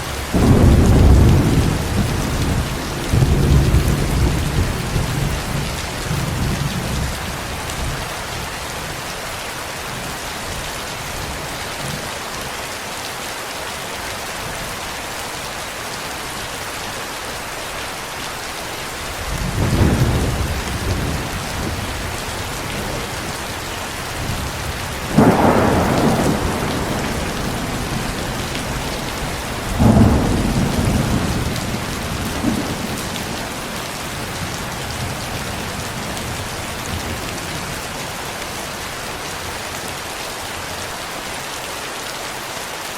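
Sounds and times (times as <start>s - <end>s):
steady rain: 0.0s - 42.9s
thunder rolling: 0.4s - 7.2s, 19.4s - 37.2s.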